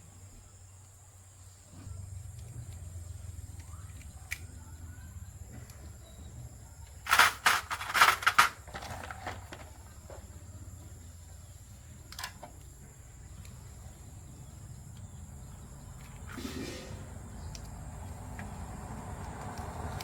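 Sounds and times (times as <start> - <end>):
low steady hum: 0.0 - 19.3
sharp knocks or clatters: 7.1 - 9.7.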